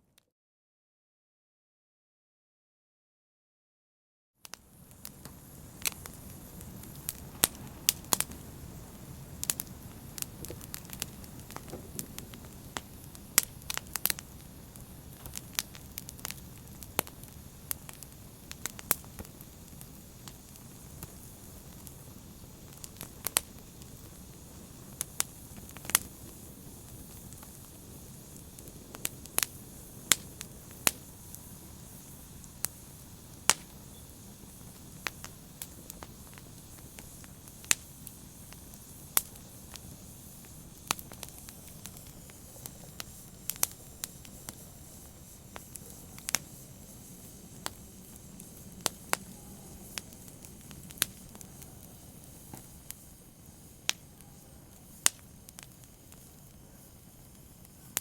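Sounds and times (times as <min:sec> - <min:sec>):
wood fire pops and snaps: 0:04.4 - 0:58.0
hiss of burning: 0:04.5 - 0:58.0.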